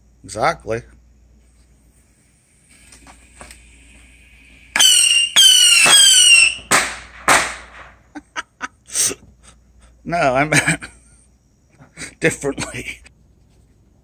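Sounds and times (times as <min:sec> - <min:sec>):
shrill rocket whistles: 0:02.1 - 0:08.0
sharp bangs: 0:04.8 - 0:08.0.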